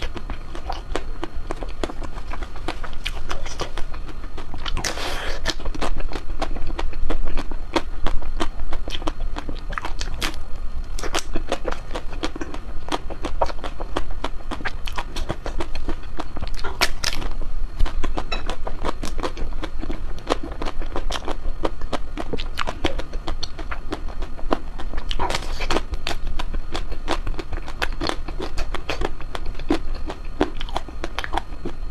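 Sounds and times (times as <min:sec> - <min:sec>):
low steady hum: 0:00.0 - 0:31.9.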